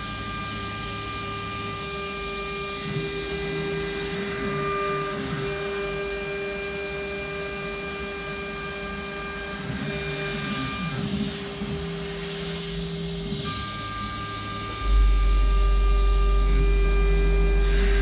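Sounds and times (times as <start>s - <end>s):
router spindle whine: 0.0s - 18.0s
stepper motors buzzing: 14.4s - 18.0s.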